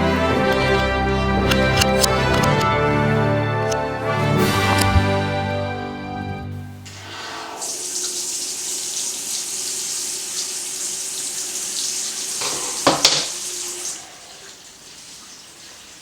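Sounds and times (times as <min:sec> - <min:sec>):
tap water running into basin: 0:06.9 - 0:16.0
sharp knocks: 0:12.4 - 0:13.4.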